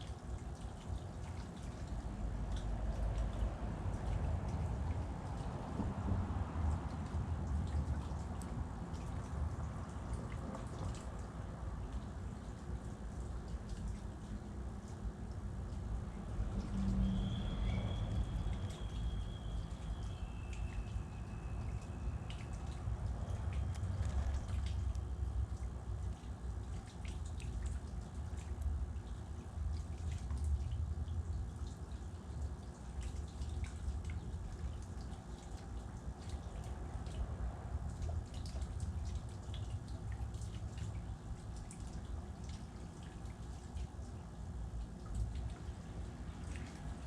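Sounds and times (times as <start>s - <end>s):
steady low rumble: 0.6s - 32.5s
thin whistled note: 17.0s - 22.8s.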